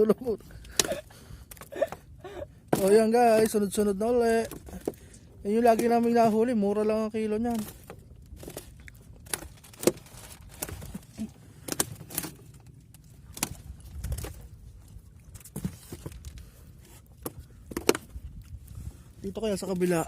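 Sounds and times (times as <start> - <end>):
fishing gear clicks and knocks: 0.0 - 18.8.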